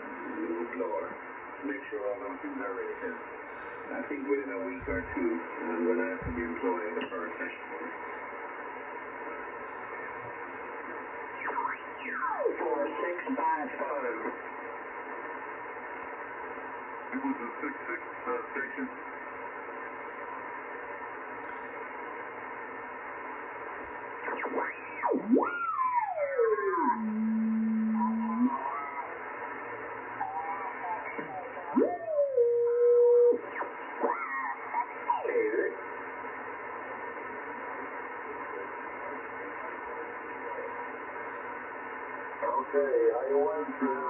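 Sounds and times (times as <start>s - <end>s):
radio receiver hiss: 0.0s - 44.0s
swooping radio whistling tones: 24.2s - 29.2s, 30.1s - 35.4s.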